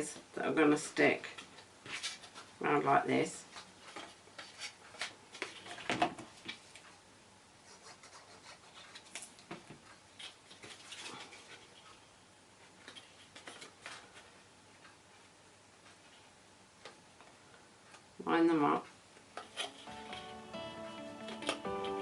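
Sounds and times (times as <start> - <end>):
card stock rustling and tapping: 21.2 - 22.0.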